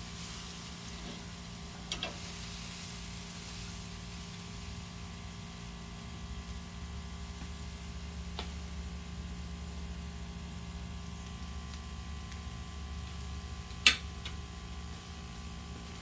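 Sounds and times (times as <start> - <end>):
constant hiss: 0.0 - 16.0
steady hum: 0.0 - 16.0
sharp click: 13.8 - 14.4.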